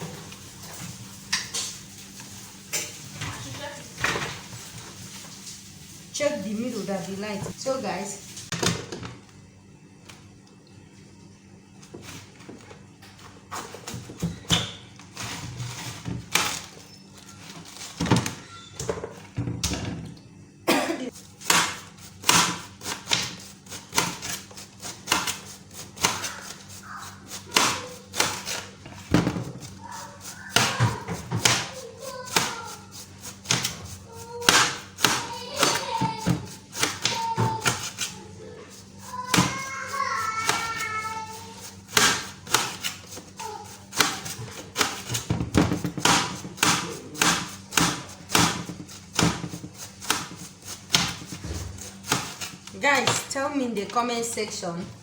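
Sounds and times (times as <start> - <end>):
knife chopping on cutting board: 21.4 - 38.2, 39.0 - 40.8, 41.5 - 53.2.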